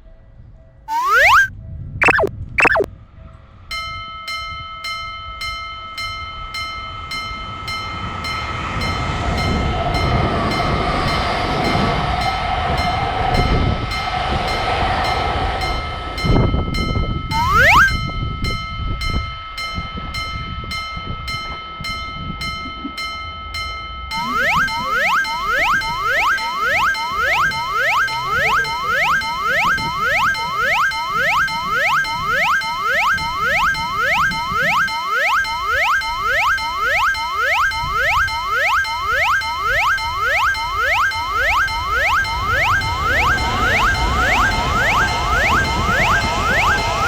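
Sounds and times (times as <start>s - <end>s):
railroad crossing alarm ringing: 0.9s - 2.9s, 4.4s - 18.1s, 23.6s - 47.0s
rising cartoon glide: 0.9s - 2.9s, 17.3s - 18.0s, 24.2s - 47.0s.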